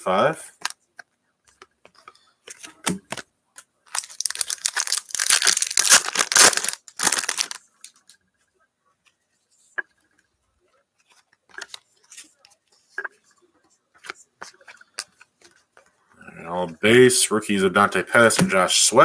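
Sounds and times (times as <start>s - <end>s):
card pack wrapper tearing: 3.9s - 8.0s.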